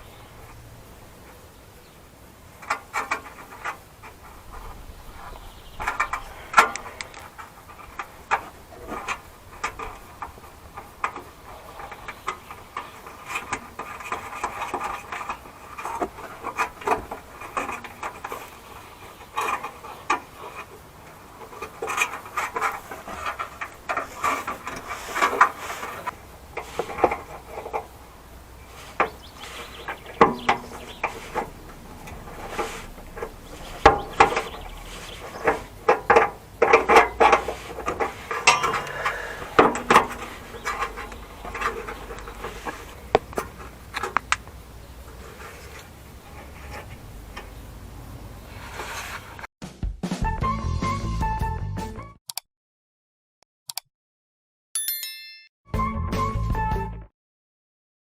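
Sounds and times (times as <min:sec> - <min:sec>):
metallic clicks and knocks: 0:35.4 - 0:44.6.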